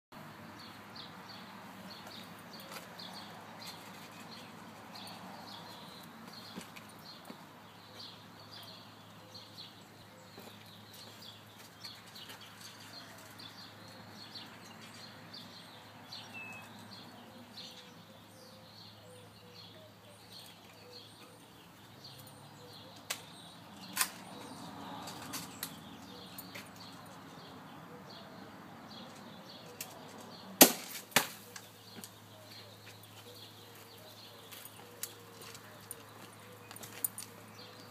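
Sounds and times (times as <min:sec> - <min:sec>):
bb gun cracks: 0:30.6 - 0:31.5.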